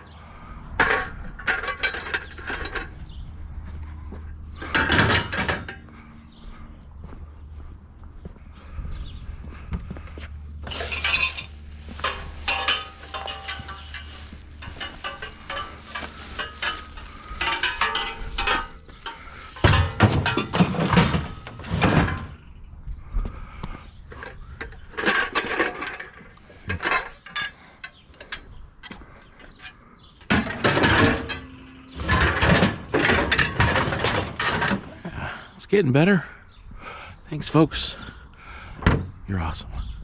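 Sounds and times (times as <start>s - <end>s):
scrap metal clanking and rattling: 0.7s - 3.2s, 4.5s - 6.1s, 10.6s - 22.5s, 24.1s - 35.4s.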